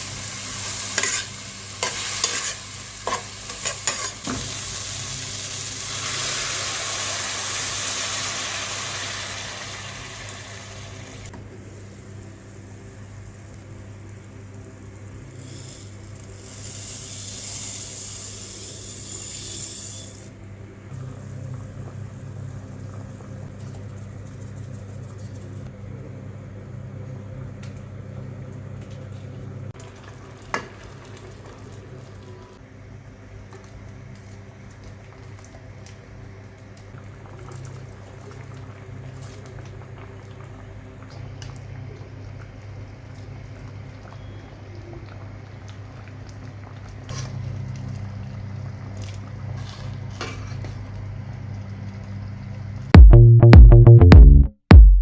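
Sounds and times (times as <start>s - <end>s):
food sizzling in hot oil: 0.0s - 20.3s.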